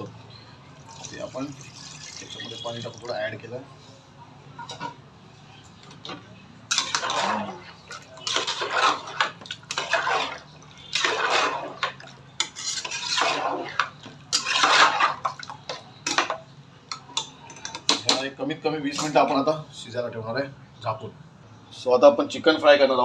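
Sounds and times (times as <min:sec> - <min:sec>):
metal spoon scraping a pot: 0:06.7 - 0:16.4.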